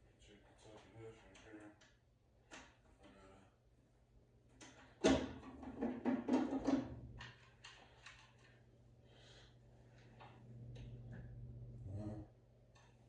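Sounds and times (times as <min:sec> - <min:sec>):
steady low hum: 0:06.9 - 0:13.0.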